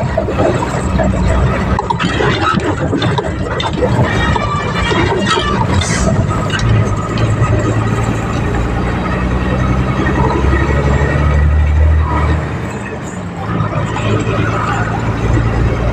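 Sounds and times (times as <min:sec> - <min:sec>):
deep engine drone: 0:00.0 - 0:15.9
engine and tyre rumble: 0:00.0 - 0:15.9.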